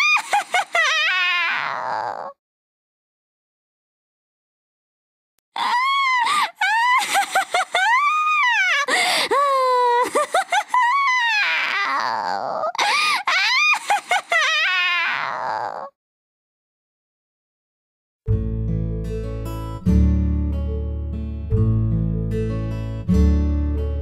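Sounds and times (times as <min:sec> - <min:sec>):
high-pitched witch cackle: 0:00.0 - 0:01.4, 0:06.0 - 0:08.9, 0:09.8 - 0:11.4, 0:13.2 - 0:15.8.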